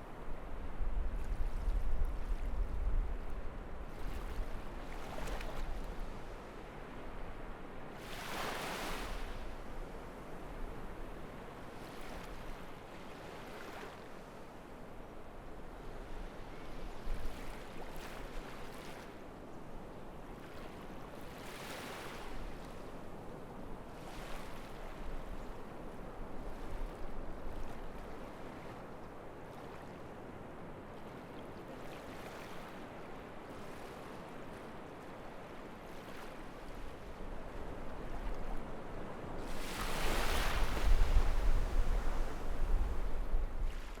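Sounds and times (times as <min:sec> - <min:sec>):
sea waves washing on shore: 0:35.4 - 0:44.0.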